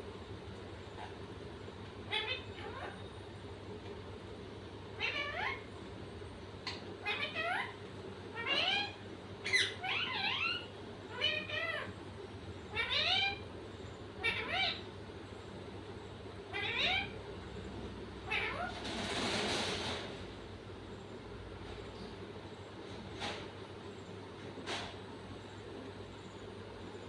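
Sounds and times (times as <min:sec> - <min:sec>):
cat meowing: 0:02.1 - 0:03.0, 0:05.0 - 0:05.7, 0:16.5 - 0:17.2.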